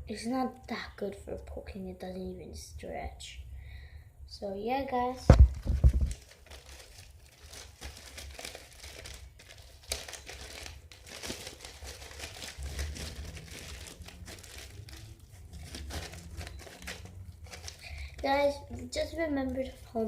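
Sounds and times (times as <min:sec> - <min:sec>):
dried slime crinkling in hands: 0:05.4 - 0:19.7.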